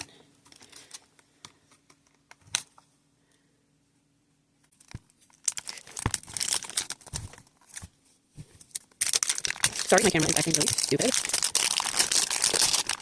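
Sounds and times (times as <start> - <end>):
packaging crinkling: 4.7 - 7.9, 8.6 - 13.0
packaging tearing: 4.8 - 7.8, 8.7 - 13.0.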